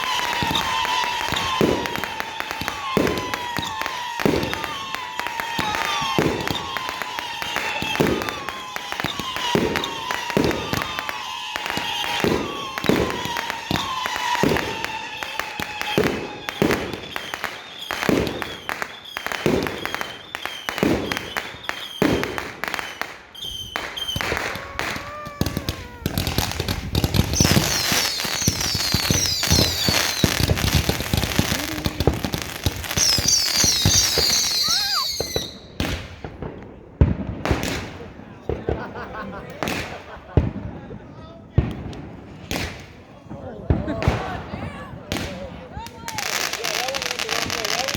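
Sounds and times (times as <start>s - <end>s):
fireworks whistling: 0.0s - 36.5s, 46.0s - 47.9s
fireworks bangs: 0.0s - 47.9s
fireworks crackling: 0.0s - 47.9s.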